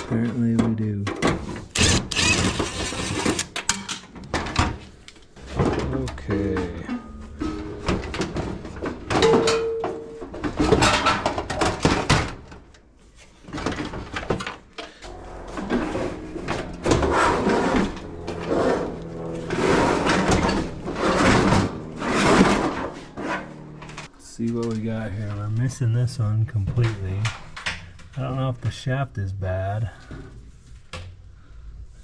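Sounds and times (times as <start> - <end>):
dryer parts clattering and scraping: 0.0 - 25.3.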